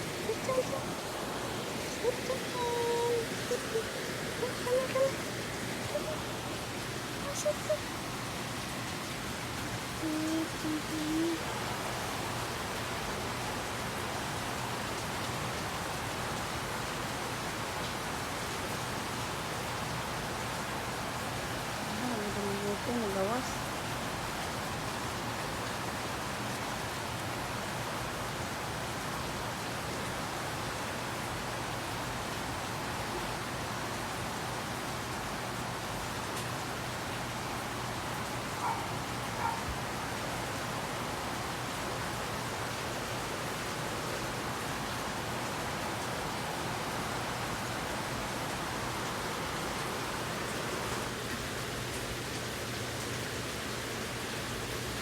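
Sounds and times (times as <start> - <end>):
steady rain falling: 0.0 - 55.0.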